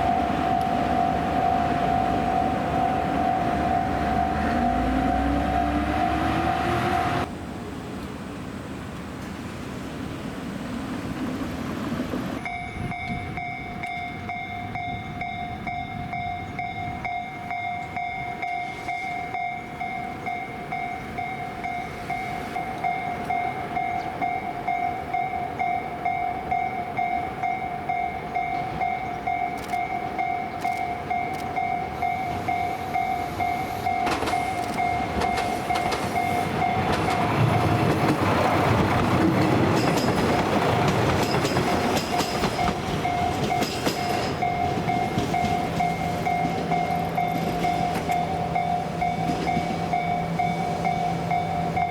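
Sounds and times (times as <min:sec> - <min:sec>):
level crossing bell ringing: 0:00.0 - 0:06.2
train wheels on rails: 0:00.0 - 0:08.2, 0:08.8 - 0:51.9.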